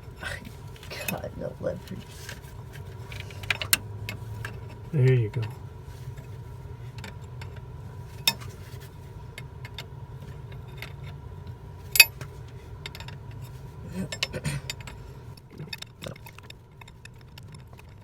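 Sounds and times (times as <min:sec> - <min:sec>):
steady low hum: 0:00.0 - 0:18.0
metal tools clinking: 0:11.9 - 0:17.7.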